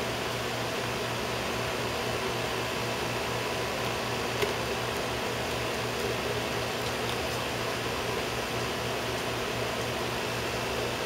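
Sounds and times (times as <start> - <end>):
machine hum and hiss: 0.0 - 11.0.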